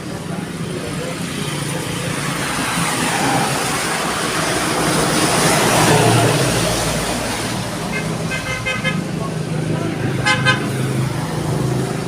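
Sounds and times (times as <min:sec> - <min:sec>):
road traffic passing: 0:00.0 - 0:12.0.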